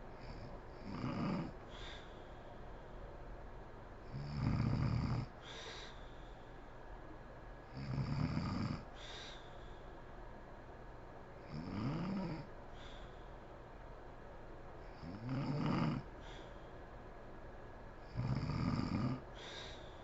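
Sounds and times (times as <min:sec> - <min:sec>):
woman snoring: 0:00.2 - 0:01.6, 0:04.1 - 0:05.3, 0:07.8 - 0:08.9, 0:11.5 - 0:12.5, 0:15.0 - 0:16.1, 0:18.1 - 0:19.2.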